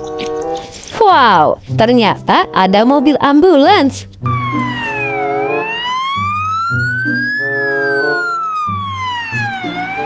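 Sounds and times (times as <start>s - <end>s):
ambulance siren wailing: 4.3s - 10.0s.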